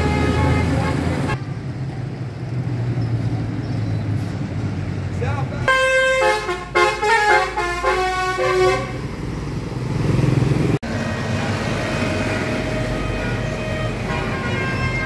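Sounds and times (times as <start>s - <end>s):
bus multi-tone horn melody: 0.0s - 1.4s, 5.6s - 9.1s, 12.2s - 15.0s
traffic noise: 0.0s - 15.0s
vehicle engine: 0.0s - 15.0s.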